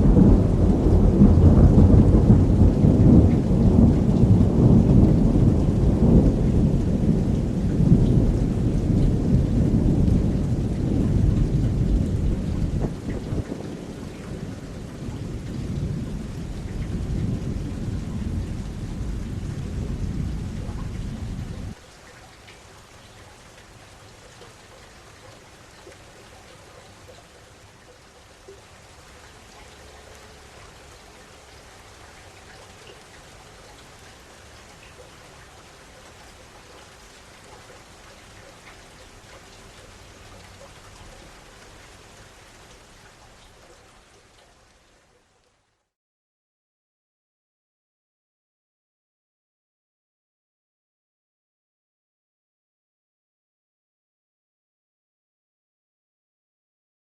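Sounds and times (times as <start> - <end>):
rolling thunder: 0.0 - 21.8
rain hiss: 0.0 - 45.9.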